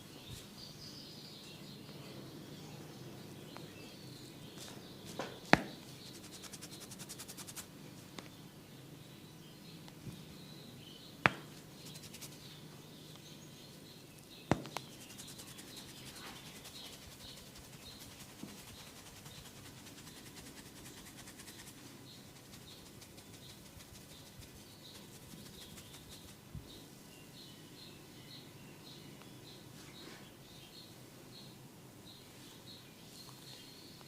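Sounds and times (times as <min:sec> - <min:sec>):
small birds chirping: 0:00.0 - 0:34.0
hands rubbing and scratching: 0:05.9 - 0:07.7, 0:11.8 - 0:12.5, 0:14.6 - 0:26.5.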